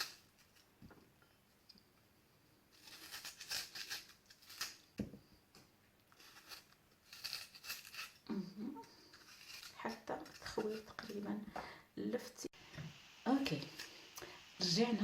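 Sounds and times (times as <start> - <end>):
knife scraping raw turnip: 2.7 - 5.0, 6.1 - 11.3.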